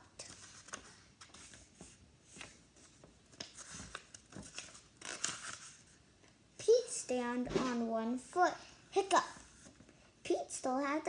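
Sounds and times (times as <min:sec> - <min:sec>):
paper pages turning: 0:00.2 - 0:06.0.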